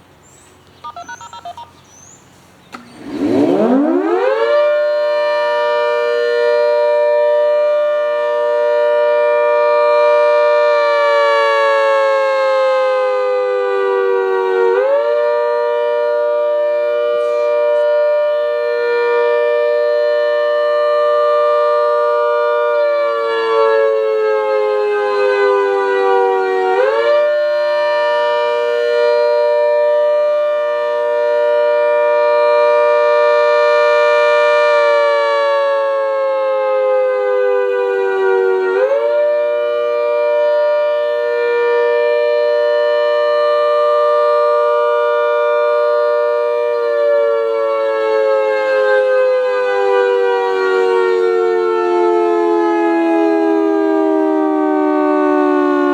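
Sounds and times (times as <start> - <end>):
civil defense siren wailing: 0.9 - 55.9
shop vac motor: 2.7 - 3.9.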